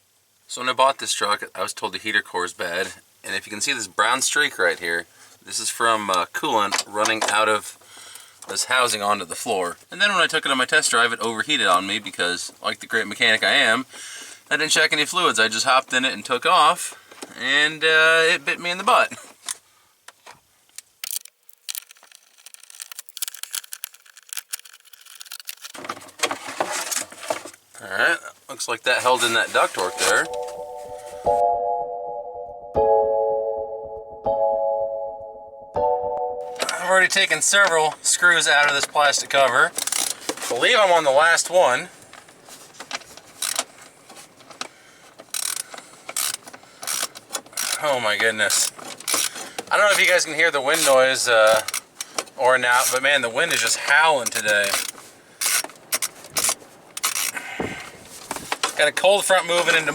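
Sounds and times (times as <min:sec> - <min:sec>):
clicks and rattles of plastic duct: 0:19.1 - 0:27.8, 0:37.4 - 0:57.4, 0:58.0 - 0:59.9
hand ratchet clicking: 0:39.8 - 0:40.2, 0:43.4 - 0:43.7, 0:45.3 - 0:47.8, 0:48.5 - 0:49.4, 0:54.3 - 0:57.4.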